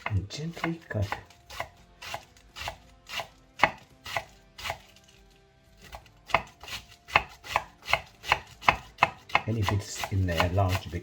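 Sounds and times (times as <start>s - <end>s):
knife cutting cabbage on board: 0.0s - 11.0s.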